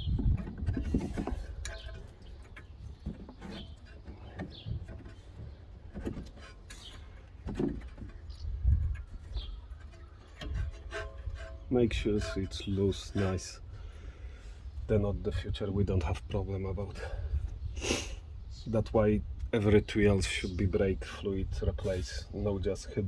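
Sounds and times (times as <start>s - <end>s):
metallic clicks and knocks: 0.1s - 12.6s.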